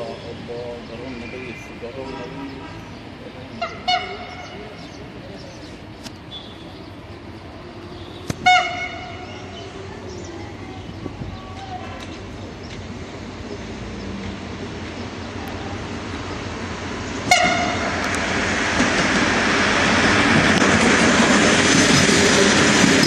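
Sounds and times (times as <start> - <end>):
passenger train running: 0.0 - 23.0
train horn blast: 3.6 - 4.6, 8.0 - 9.5, 17.3 - 18.0.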